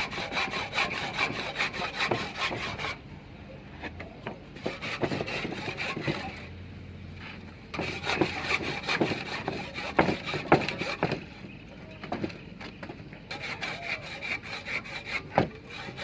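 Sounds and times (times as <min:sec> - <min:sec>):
saw cutting brick: 0:00.0 - 0:03.0, 0:04.6 - 0:06.6, 0:07.8 - 0:11.5, 0:13.3 - 0:16.0
knocks and scrapes: 0:07.2 - 0:13.5.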